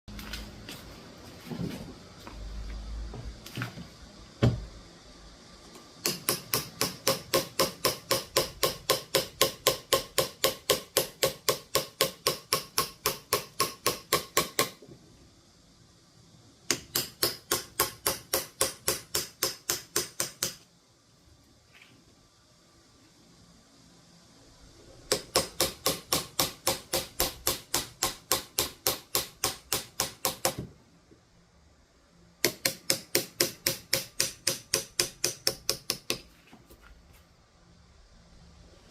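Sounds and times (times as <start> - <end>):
mallet tapping carving knife: 6.0 - 14.8, 25.1 - 30.6, 32.4 - 36.2.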